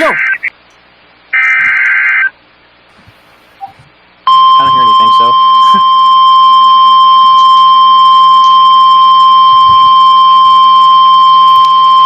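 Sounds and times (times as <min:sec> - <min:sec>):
steady alarm tone: 0:03.6 - 0:12.0.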